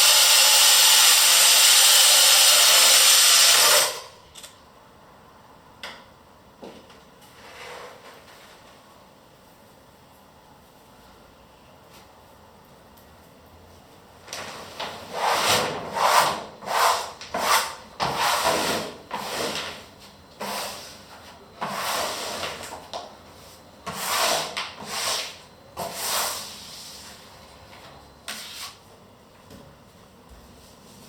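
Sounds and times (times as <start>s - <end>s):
rubbing strokes on hard surface: 15.1s - 19.6s, 23.9s - 27.2s.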